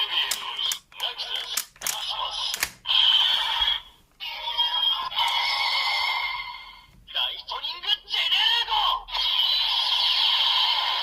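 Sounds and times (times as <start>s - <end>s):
sharp clicks: 0.2s - 2.8s.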